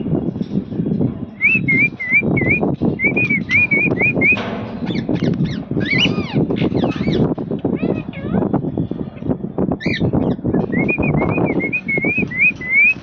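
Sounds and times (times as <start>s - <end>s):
low rumbling noise: 0.0s - 13.0s
cockatiel whistling: 10.8s - 13.0s.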